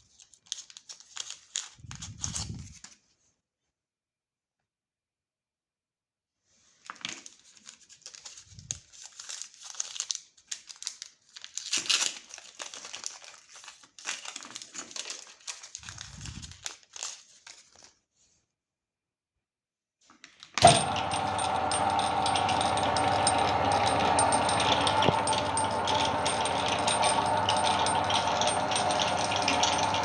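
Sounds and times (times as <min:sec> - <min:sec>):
wrappers crinkling and tearing: 0:00.0 - 0:03.0, 0:06.7 - 0:18.0.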